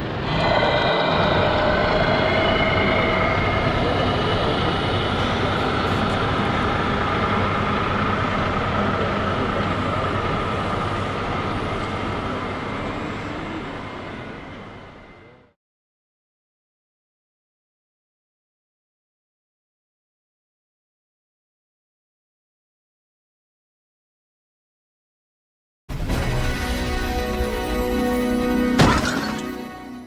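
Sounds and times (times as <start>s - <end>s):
machine running with whining tones: 0.0s - 15.5s.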